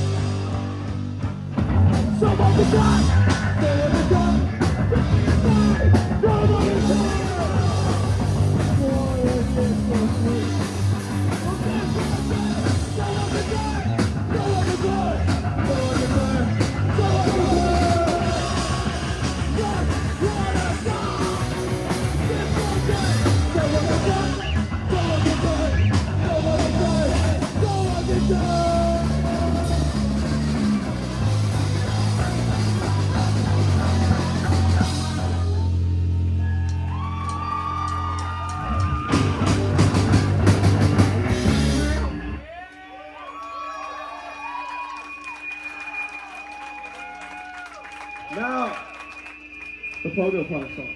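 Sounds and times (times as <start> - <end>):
distorted guitar: 0.0 - 36.4, 37.4 - 42.5
drum kit: 0.0 - 42.4
punk rock band playing: 0.0 - 42.5
person shouting singing: 1.8 - 30.5, 32.0 - 35.8.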